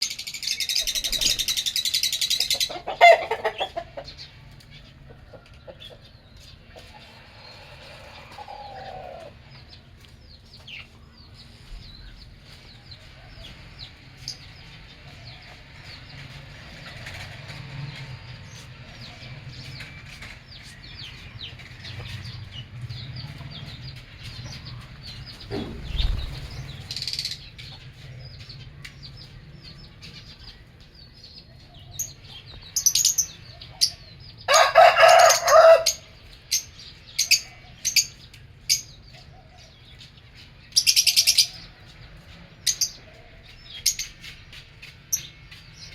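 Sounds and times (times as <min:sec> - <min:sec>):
lovebirds chirping: 0:00.0 - 0:16.3, 0:17.9 - 0:34.6.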